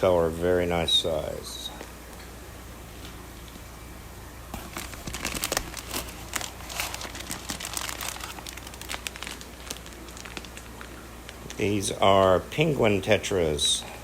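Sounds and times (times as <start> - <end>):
plastic bags crinkling: 4.5 - 12.2.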